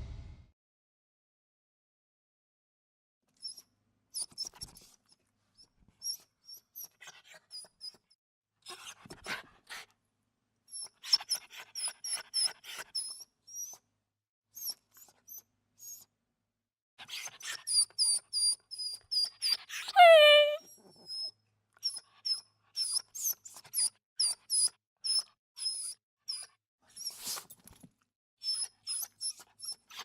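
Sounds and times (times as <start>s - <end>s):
small dog whimpering: 19.9s - 21.2s
breathy noise: 20.0s - 20.6s.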